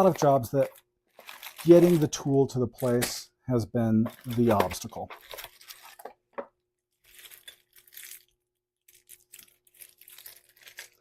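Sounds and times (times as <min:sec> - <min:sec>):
packaging rustling and crinkling: 0:00.0 - 0:03.2, 0:04.0 - 0:06.3, 0:06.9 - 0:11.0.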